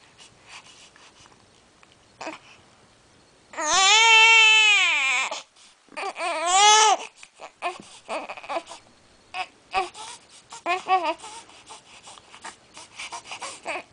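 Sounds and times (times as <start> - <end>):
baby crying: 3.6 - 11.6, 13.0 - 13.9
baby sobbing breaths: 9.7 - 13.9.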